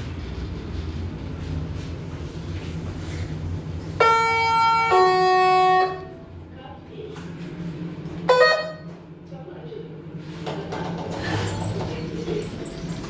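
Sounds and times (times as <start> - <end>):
steady low hum: 0.0 - 13.0
lift arrival chime: 4.0 - 6.1, 11.4 - 13.0.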